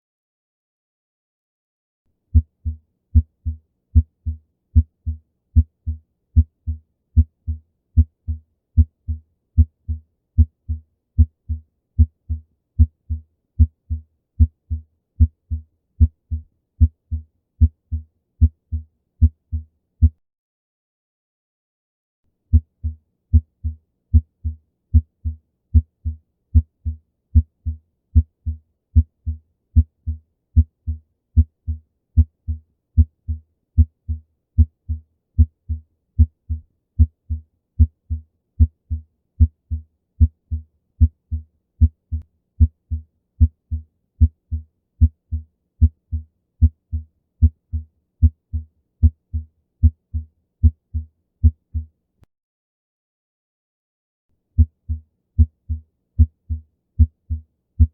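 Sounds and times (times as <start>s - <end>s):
heartbeat lub-dub: 54.6s - 57.9s.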